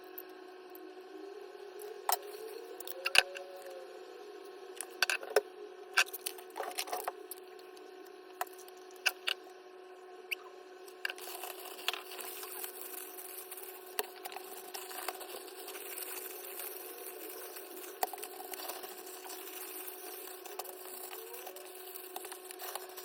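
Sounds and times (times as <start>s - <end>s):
steady hum: 0.0s - 23.0s.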